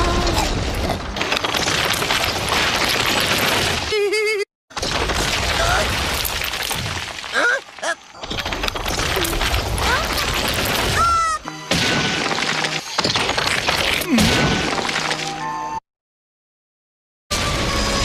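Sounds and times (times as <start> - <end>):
crashing stone breaking: 0.5 - 3.9, 4.8 - 11.1, 11.7 - 15.3
music: 10.6 - 13.0, 14.9 - 15.8.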